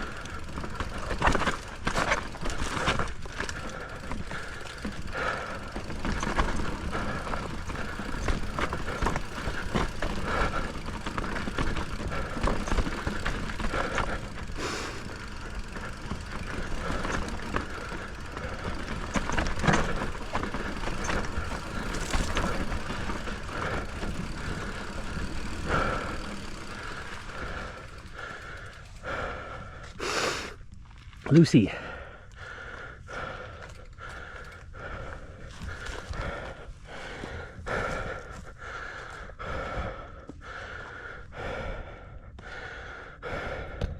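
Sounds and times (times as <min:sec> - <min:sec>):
bike clattering over rocks: 0:00.0 - 0:29.1.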